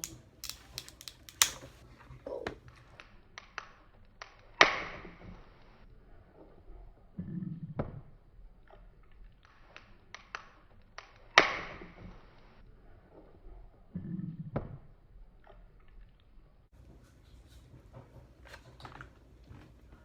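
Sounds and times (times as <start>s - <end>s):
crab shell clicking and tapping: 0.0s - 1.7s
loud shell crack: 0.0s - 1.8s.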